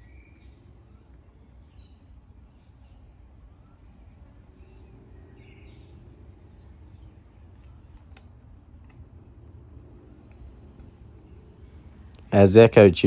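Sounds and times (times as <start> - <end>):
birds chirping: 0.0 - 13.0
steady low rumble: 0.0 - 13.0
faint sharp clicks: 7.5 - 11.4.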